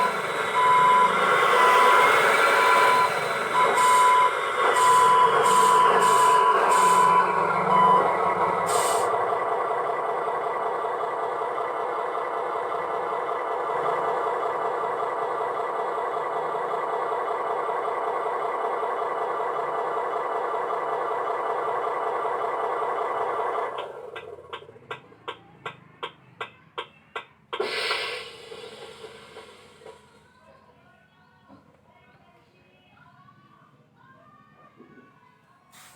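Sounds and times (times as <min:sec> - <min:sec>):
reversing beeps: 0:00.0 - 0:09.0
simulated diesel engine running: 0:00.0 - 0:30.5
short hiss: 0:27.6 - 0:30.0.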